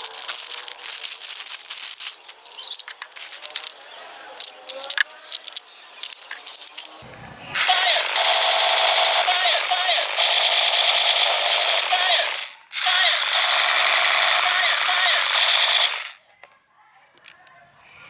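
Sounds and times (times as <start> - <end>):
plastic packaging crinkling: 0.0 - 7.0.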